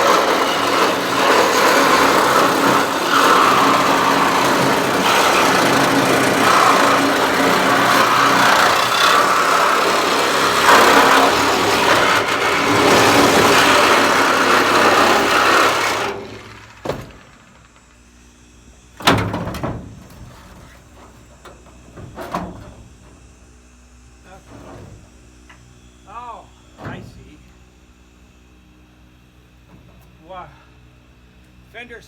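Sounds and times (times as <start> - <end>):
power tool cutting sheet steel: 0.0 - 17.6.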